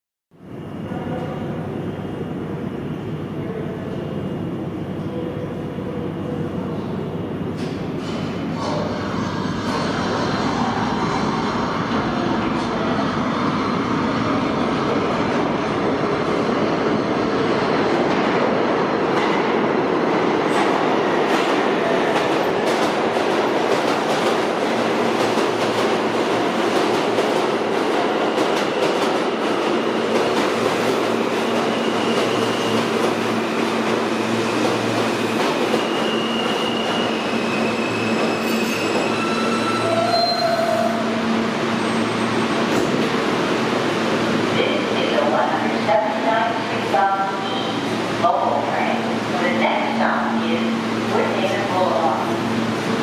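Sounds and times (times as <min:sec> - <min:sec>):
subway train rumbling: 0:00.3 - 0:53.0
high wheel squeals: 0:35.8 - 0:41.0.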